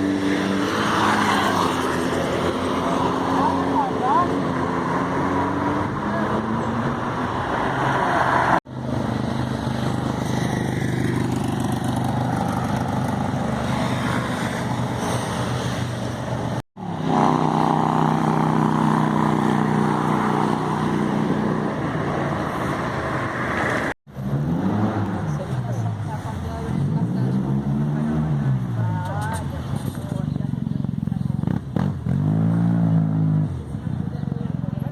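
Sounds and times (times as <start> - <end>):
motorcycles revving past: 9.5 - 25.6.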